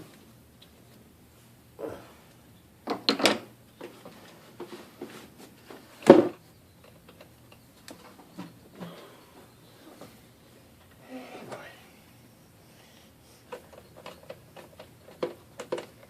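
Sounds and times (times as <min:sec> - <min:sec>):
hand tools clicking and knocking: 0:13.5 - 0:16.0.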